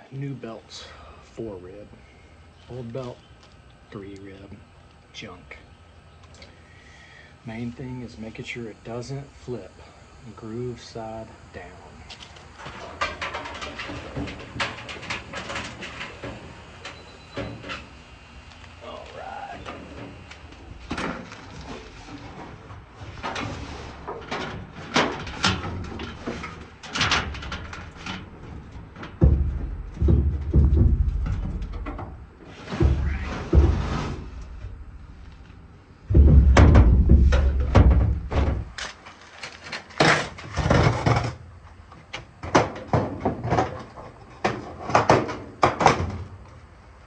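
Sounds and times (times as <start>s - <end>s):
knocks and scrapes of dryer parts: 11.6s - 17.9s, 19.6s - 46.4s
appliance panels knocking and clacking: 24.1s - 34.8s, 36.1s - 38.8s
low rumble: 29.2s - 38.8s.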